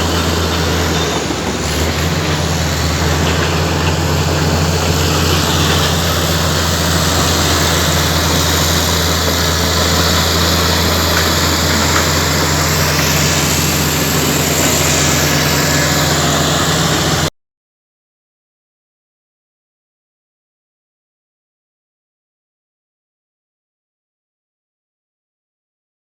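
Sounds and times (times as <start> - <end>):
bulldozer diesel engine idling: 0.0 - 17.3.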